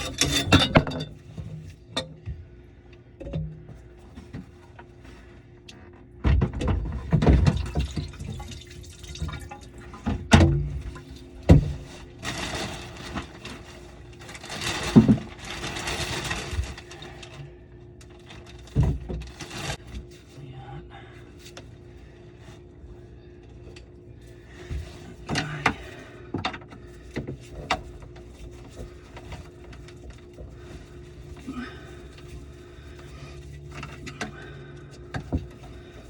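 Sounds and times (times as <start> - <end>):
knocks and clunks of pipes: 0.0 - 2.5, 3.1 - 4.9, 5.7 - 13.8, 18.0 - 20.1, 24.6 - 31.5, 32.1 - 36.0.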